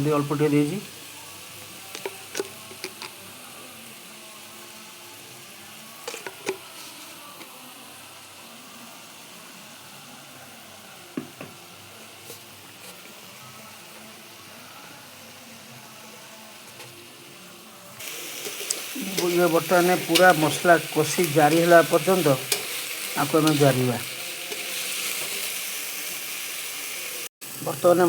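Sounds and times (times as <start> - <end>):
masala sizzling in hot oil: 0.0 - 28.0.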